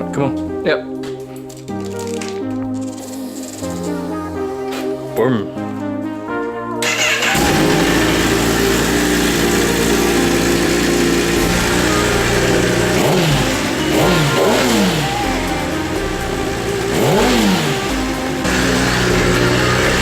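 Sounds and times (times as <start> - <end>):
motorcycle engine idling and revving: 6.8 - 20.0.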